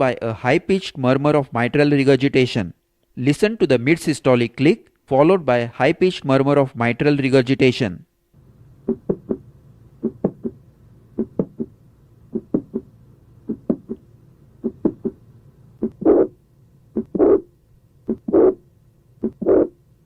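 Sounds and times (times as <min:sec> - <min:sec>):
heartbeat with click: 0:08.9 - 0:09.4, 0:10.0 - 0:10.6, 0:11.2 - 0:12.9, 0:13.5 - 0:15.2, 0:17.0 - 0:17.2, 0:19.2 - 0:19.6
high-pitched heart murmur: 0:08.9 - 0:09.4, 0:10.0 - 0:10.6, 0:11.2 - 0:12.9, 0:13.5 - 0:14.0, 0:14.6 - 0:15.2, 0:15.8 - 0:17.5, 0:18.1 - 0:18.6, 0:19.2 - 0:19.8.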